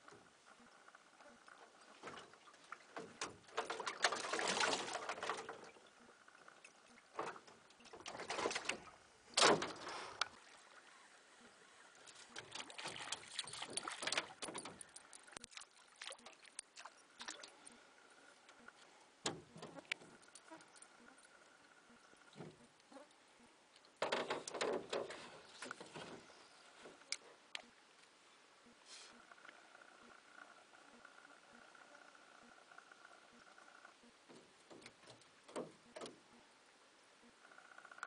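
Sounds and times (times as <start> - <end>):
oar strokes splashing: 1.8 - 5.9, 7.0 - 17.8.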